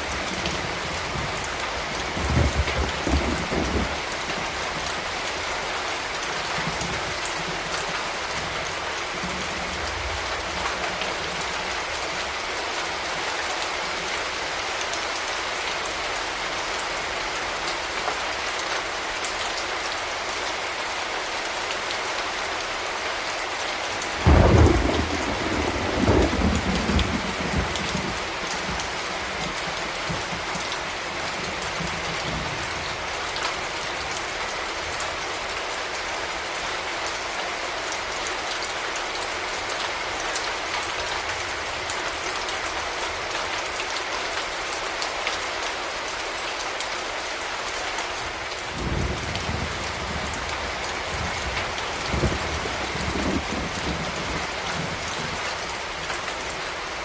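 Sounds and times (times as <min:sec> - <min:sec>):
rain falling: 0:00.0 - 0:57.0
thunder clap rumbling: 0:02.1 - 0:04.1, 0:24.2 - 0:28.9, 0:48.8 - 0:55.4.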